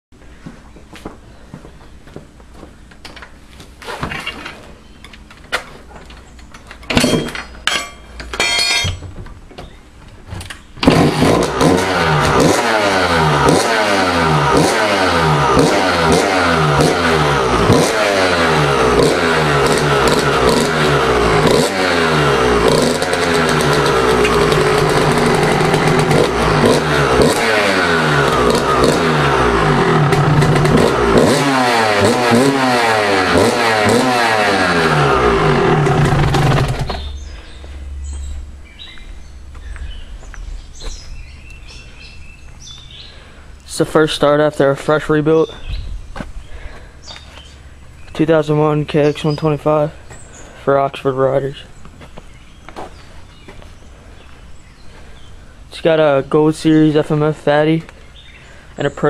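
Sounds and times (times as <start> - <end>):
motorcycle start attempts: 2.9 - 39.0
two-stroke engine revving: 10.8 - 37.6.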